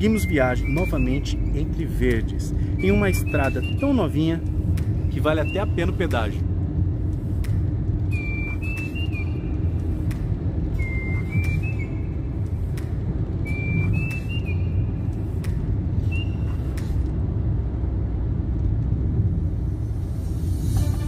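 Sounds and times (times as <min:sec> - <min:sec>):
short high whistling tones: 0:00.0 - 0:04.2, 0:08.1 - 0:09.5, 0:10.7 - 0:12.2, 0:13.4 - 0:15.0, 0:16.0 - 0:17.0
car road and engine rumble: 0:00.0 - 0:21.0.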